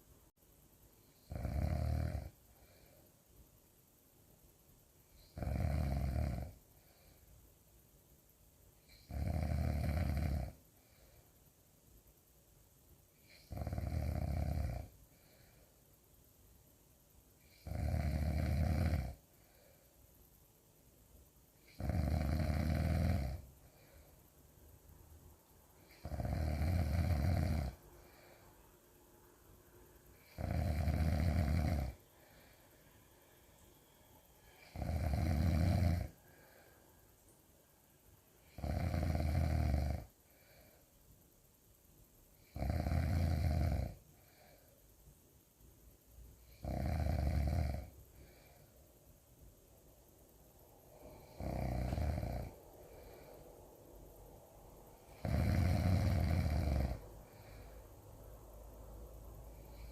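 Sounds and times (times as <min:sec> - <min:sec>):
loud snoring: 0:01.2 - 0:02.4, 0:05.2 - 0:06.6, 0:08.9 - 0:10.6, 0:13.3 - 0:15.0, 0:17.5 - 0:19.2, 0:21.6 - 0:23.9, 0:25.9 - 0:28.4, 0:30.2 - 0:32.5, 0:34.6 - 0:36.6, 0:38.4 - 0:40.1, 0:42.4 - 0:44.5, 0:46.5 - 0:48.5, 0:51.0 - 0:53.3, 0:55.0 - 0:57.6.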